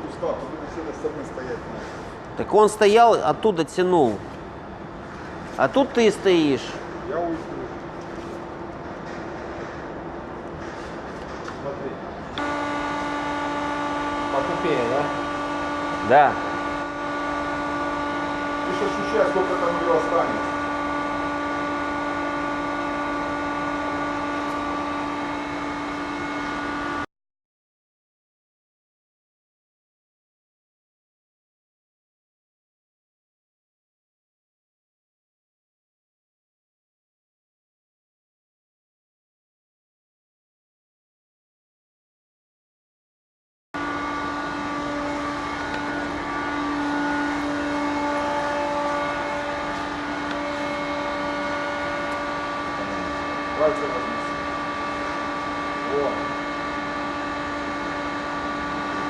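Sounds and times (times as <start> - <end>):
machine hum: 0.0 - 27.1, 43.8 - 59.0.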